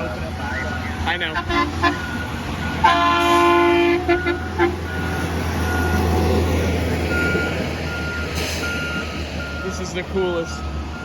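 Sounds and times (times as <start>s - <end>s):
diesel engine rumbling: 0.0s - 11.0s
multi-note horn blast: 2.8s - 4.8s
backup alarm beeping: 7.1s - 9.8s.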